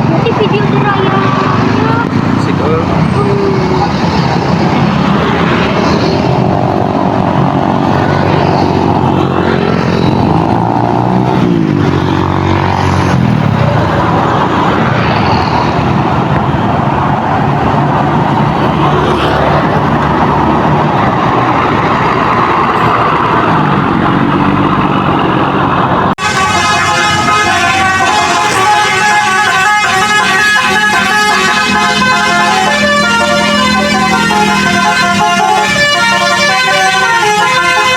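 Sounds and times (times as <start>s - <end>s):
bus engine running: 0.0s - 37.9s
melodic multi-tone bus horn: 26.2s - 37.9s.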